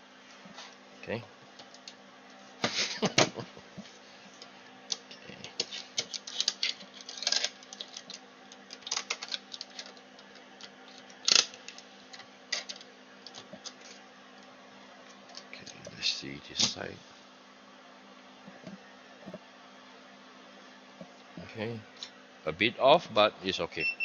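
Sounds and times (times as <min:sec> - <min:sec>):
faint steady hum: 0:00.0 - 0:24.0.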